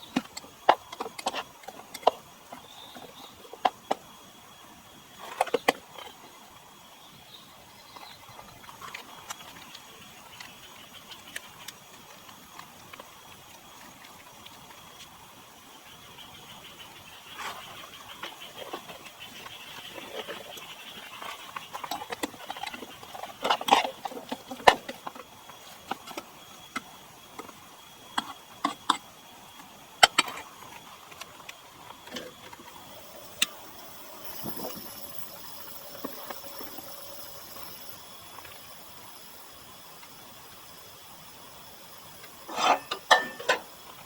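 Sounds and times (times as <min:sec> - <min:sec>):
faint high hiss: 0:32.6 - 0:44.0
camp cookware clicking and knocking: 0:42.4 - 0:43.8.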